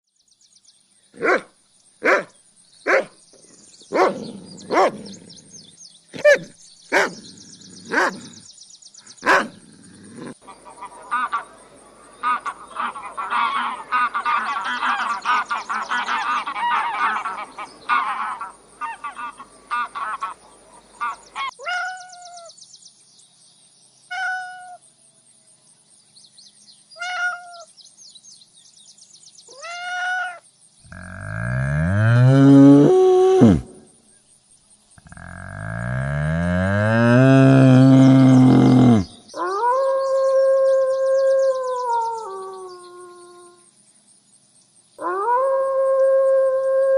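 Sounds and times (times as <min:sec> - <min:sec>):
animals chattering and chirping: 0:02.9 - 0:22.4
high drawn-out animal call: 0:09.1 - 0:22.5, 0:24.1 - 0:24.8, 0:27.0 - 0:27.7, 0:29.5 - 0:33.9, 0:35.0 - 0:43.7
cow mooing: 0:30.9 - 0:33.7, 0:35.0 - 0:39.1.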